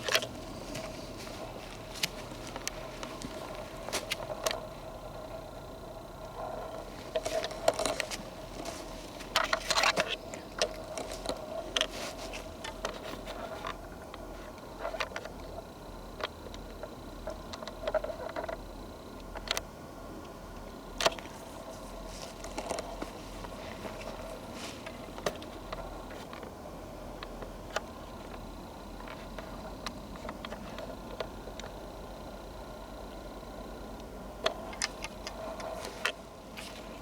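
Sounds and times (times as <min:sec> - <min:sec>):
footsteps crunching on twigs: 0:00.0 - 0:04.4, 0:06.9 - 0:13.3, 0:21.2 - 0:26.2
camera handling rustling: 0:00.0 - 0:04.6, 0:07.0 - 0:13.8.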